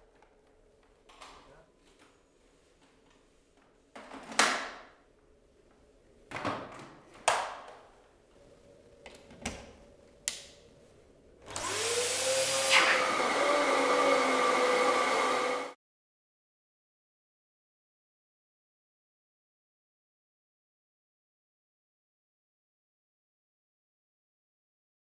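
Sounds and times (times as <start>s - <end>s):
vacuum motor whining: 11.5s - 15.8s.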